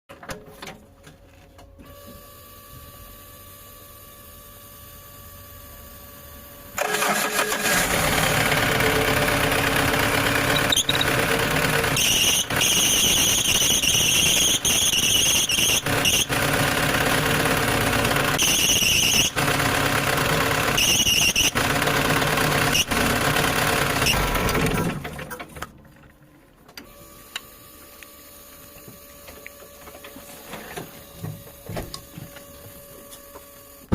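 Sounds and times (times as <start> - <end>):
car engine running: 7.6 - 12.6
power steering belt squealing: 10.4 - 11.3, 11.9 - 16.4, 18.4 - 19.4, 20.8 - 21.6.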